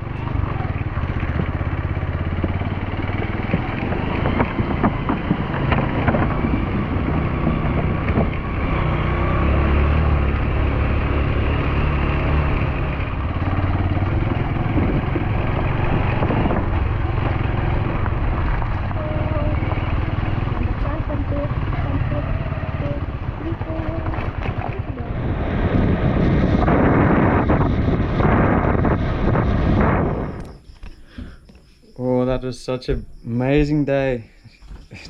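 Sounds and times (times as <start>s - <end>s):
wind buffeting microphone: 0.0s - 11.8s, 12.4s - 30.9s
vehicle engine running: 0.0s - 32.5s.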